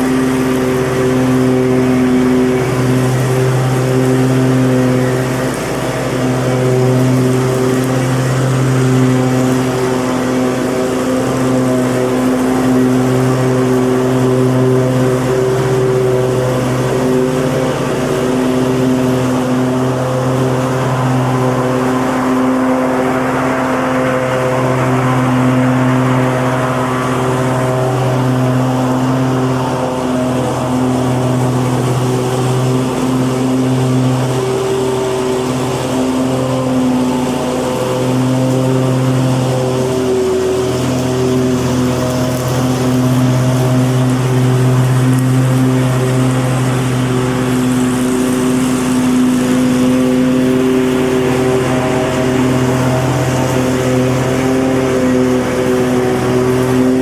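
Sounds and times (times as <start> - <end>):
lawn mower engine running: 0.0 - 57.0.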